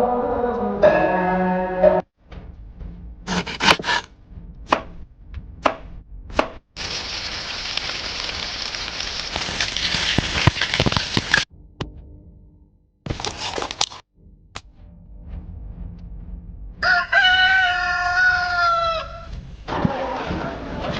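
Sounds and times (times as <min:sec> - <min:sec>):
knife chopping on cutting board: 0:03.3 - 0:04.1, 0:05.6 - 0:05.8, 0:06.4 - 0:06.6
steady hiss: 0:06.8 - 0:11.5.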